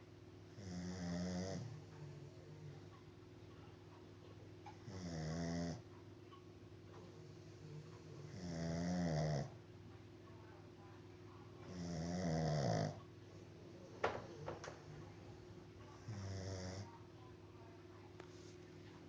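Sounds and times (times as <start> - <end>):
pet snoring: 0.5 - 2.8, 4.7 - 5.8, 7.0 - 9.6, 11.6 - 13.0, 16.0 - 16.9.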